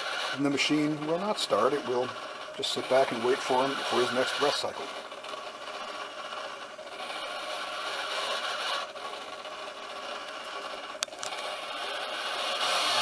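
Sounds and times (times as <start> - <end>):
servo whirring: 0.0 - 13.0.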